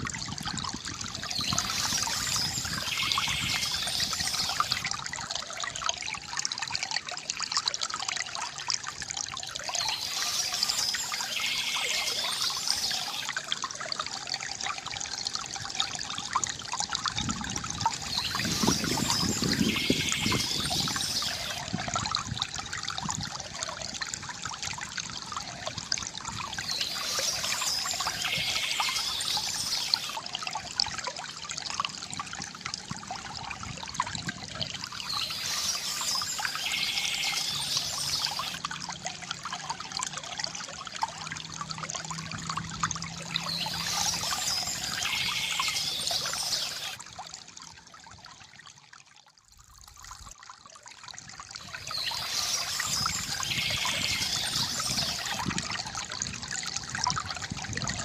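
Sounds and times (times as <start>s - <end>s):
fountain water trickling: 0.0s - 58.0s
bird chirping: 43.4s - 47.0s.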